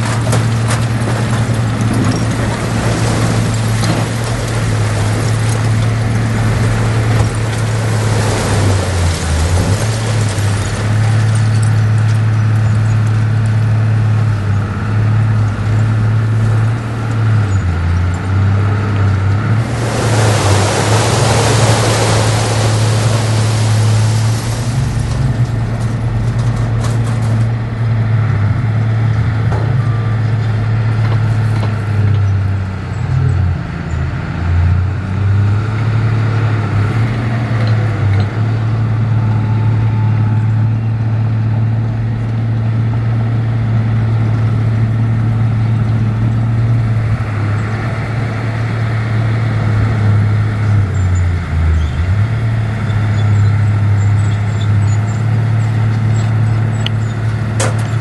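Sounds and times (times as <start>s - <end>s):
heavy diesel engine droning: 0.0s - 58.0s
loud rushing hiss: 19.6s - 25.4s.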